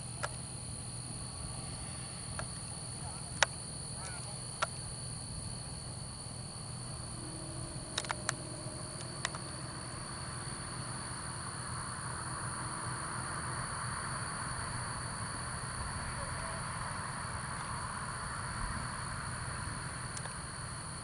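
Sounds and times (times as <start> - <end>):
crickets chirring: 0.0 - 21.0
sharp clicks: 7.8 - 8.4, 20.2 - 20.4.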